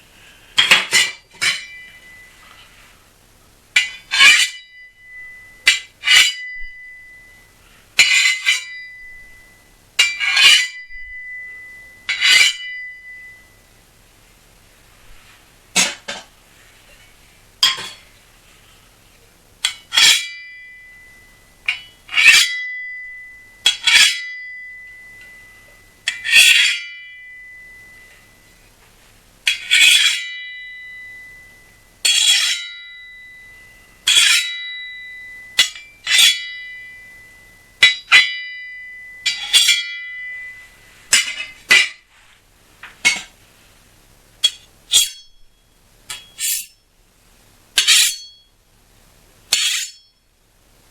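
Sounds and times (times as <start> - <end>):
knife blades clashing and ringing: 0.6 - 2.6, 3.8 - 13.6, 17.6 - 18.1, 19.6 - 28.6, 29.5 - 42.1, 43.0 - 43.4, 44.4 - 46.8, 47.8 - 48.5, 49.5 - 50.2.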